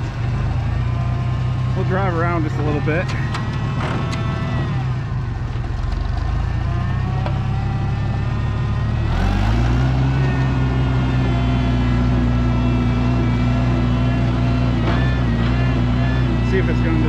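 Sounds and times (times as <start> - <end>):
tractor engine running: 0.0 - 17.0.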